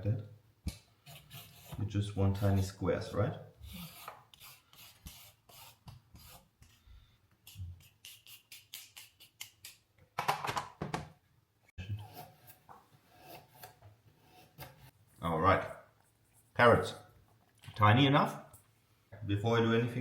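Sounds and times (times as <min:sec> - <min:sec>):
blade scraping carrot: 0:01.0 - 0:02.8.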